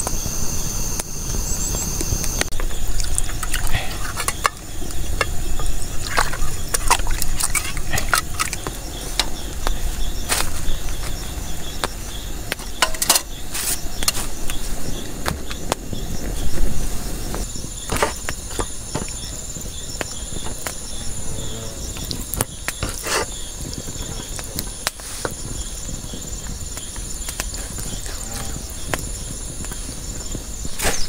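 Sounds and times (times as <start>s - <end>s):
insects chirring: 0.0s - 31.0s
utensils and pots clicking: 2.4s - 9.7s, 12.5s - 13.3s.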